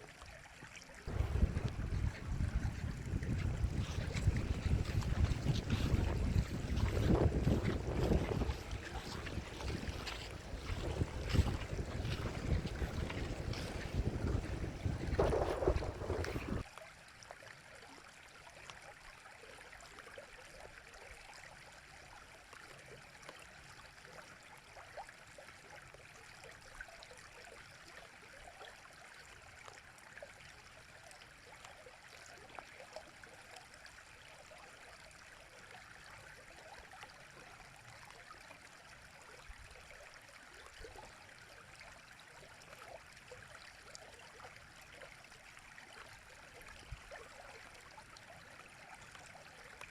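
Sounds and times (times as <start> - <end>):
stream flowing over stones: 1.1 - 16.6.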